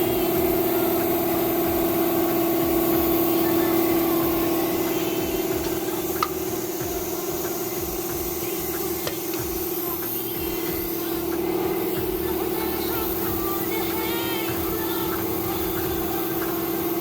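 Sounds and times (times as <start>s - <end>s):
motor humming: 0.0s - 17.0s.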